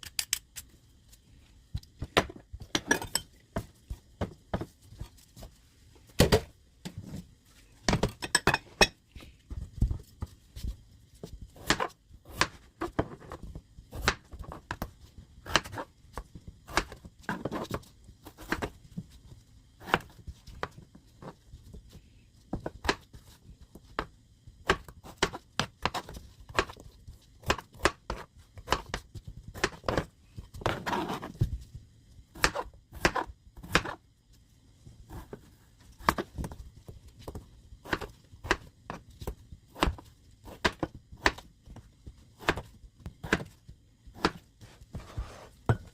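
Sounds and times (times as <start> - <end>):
knife chopping on a board: 27.4 - 31.3, 32.4 - 34.0, 37.3 - 41.5, 42.4 - 45.9
knife scraping a board: 30.6 - 31.4, 44.2 - 45.8.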